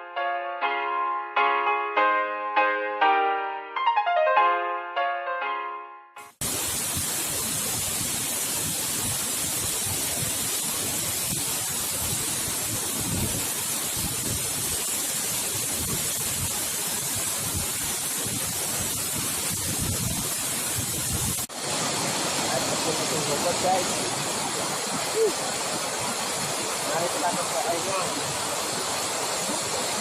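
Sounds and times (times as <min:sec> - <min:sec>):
waterfall rushing: 0:06.4 - 0:30.0.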